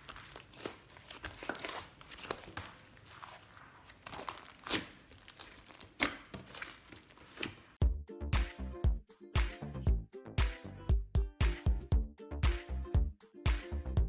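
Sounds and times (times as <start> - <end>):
slime squished by hand: 0.0 - 7.8.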